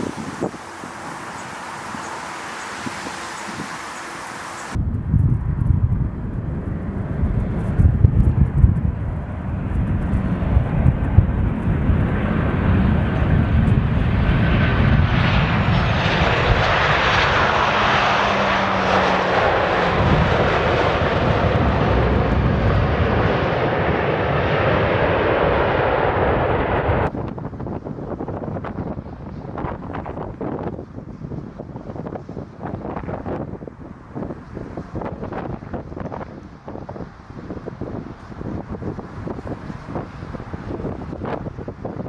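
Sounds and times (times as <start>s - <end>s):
jet engines roaring: 0.0s - 4.8s, 6.1s - 27.1s
wind buffeting microphone: 0.0s - 42.0s.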